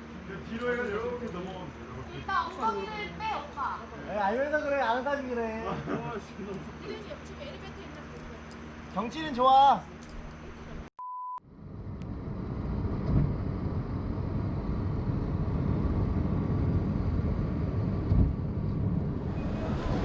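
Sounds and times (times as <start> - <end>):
one-tone beep: 11.0 - 11.4
low rumbling noise: 11.5 - 20.0.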